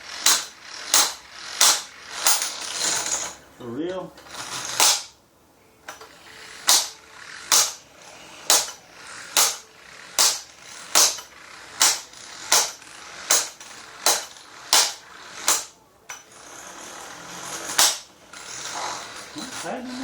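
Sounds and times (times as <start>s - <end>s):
impact wrench hammering: 0.0s - 3.4s, 4.2s - 5.2s, 5.8s - 20.0s
motor whirring: 5.9s - 20.0s.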